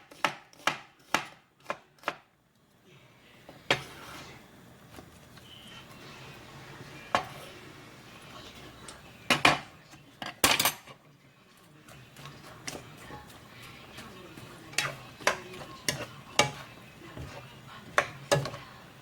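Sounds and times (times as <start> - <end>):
utensils and dishes clinking: 8.3 - 11.2, 11.8 - 19.0.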